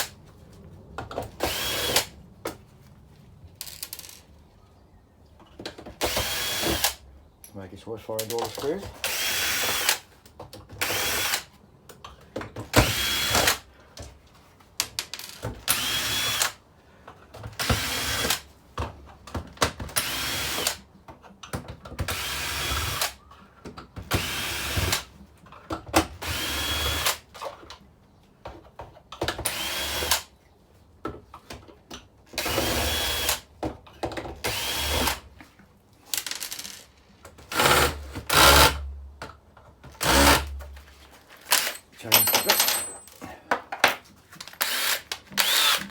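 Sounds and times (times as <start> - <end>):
power drill whining: 1.4 - 2.1, 6.0 - 7.0, 26.2 - 27.2, 29.5 - 30.2, 32.4 - 33.4, 34.4 - 35.2, 40.0 - 40.5, 44.6 - 45.9.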